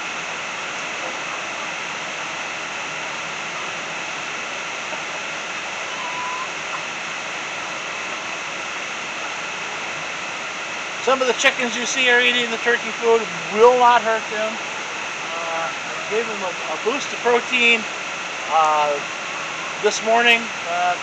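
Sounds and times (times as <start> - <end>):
flowing water rushing: 0.0 - 21.0
short high call: 5.8 - 6.6.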